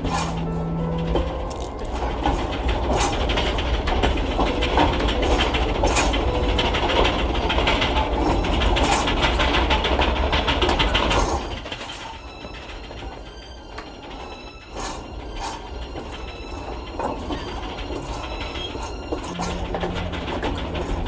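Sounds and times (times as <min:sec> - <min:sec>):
loud rattling with low rumble: 0:00.0 - 0:13.4, 0:19.3 - 0:21.0.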